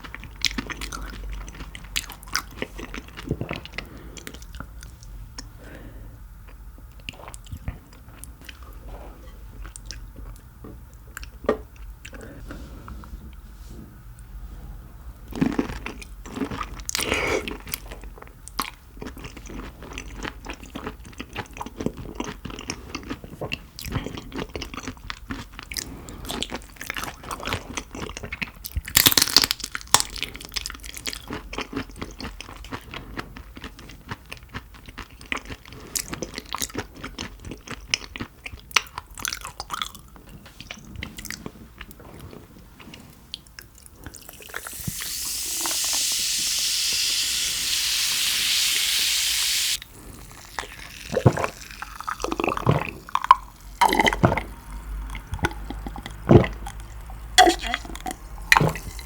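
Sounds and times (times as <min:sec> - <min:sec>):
person chewing crunchy food: 0:00.0 - 0:05.6, 0:15.3 - 0:45.9, 0:49.6 - 0:59.0.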